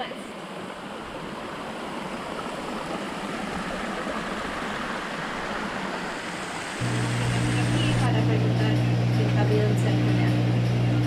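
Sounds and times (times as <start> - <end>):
waterfall rushing: 0.0 - 8.2.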